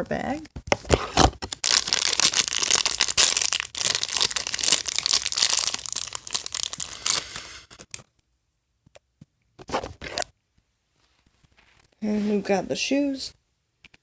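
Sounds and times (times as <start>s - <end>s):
plastic bag crinkling and tearing: 0.7s - 8.1s.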